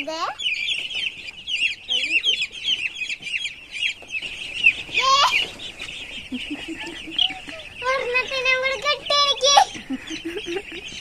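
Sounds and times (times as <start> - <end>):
chickens peeping: 0.0 - 11.0
chicken squawk: 0.1 - 11.0.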